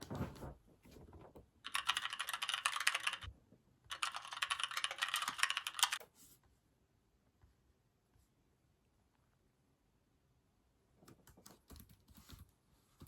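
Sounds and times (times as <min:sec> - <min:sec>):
keyboard typing: 0:01.7 - 0:03.3, 0:03.9 - 0:06.0, 0:11.0 - 0:12.4.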